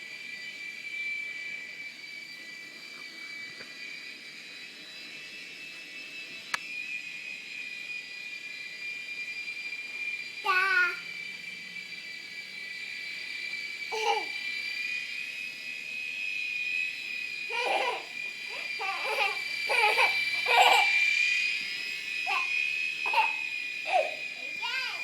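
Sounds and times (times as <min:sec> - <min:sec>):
toy helicopter motor whine: 0:00.0 - 0:25.0
young child laughing and babbling: 0:17.5 - 0:21.0, 0:23.1 - 0:25.0.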